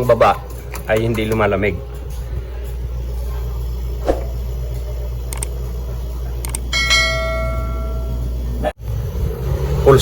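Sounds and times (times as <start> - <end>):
low machine hum: 1.8 - 9.6
metallic ring: 6.7 - 8.4.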